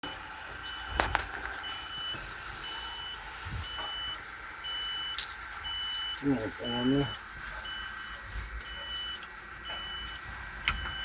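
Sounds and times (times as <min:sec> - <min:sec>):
electronic warning beeper: 0:00.0 - 0:11.0.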